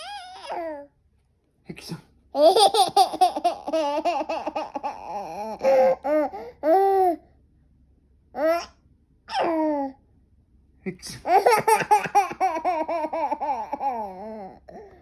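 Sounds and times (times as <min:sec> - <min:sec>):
baby laughing and squealing: 0:00.0 - 0:00.8, 0:02.4 - 0:07.1, 0:09.3 - 0:09.8, 0:11.2 - 0:14.6.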